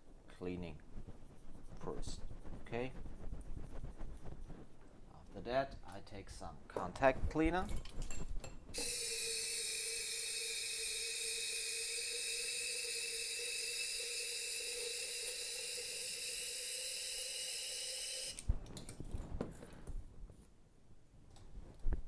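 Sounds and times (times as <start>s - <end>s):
aerosol spray hissing: 8.8s - 18.4s.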